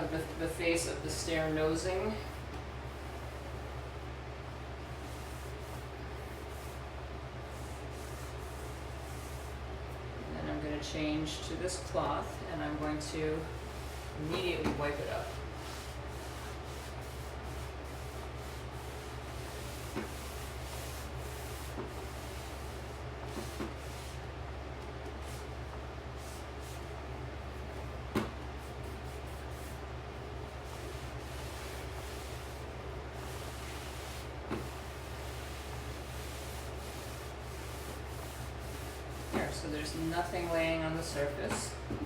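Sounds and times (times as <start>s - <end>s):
steady low hum: 0.0s - 42.0s
cloth rubbing on wood: 5.0s - 9.7s, 13.4s - 24.3s, 25.0s - 41.2s.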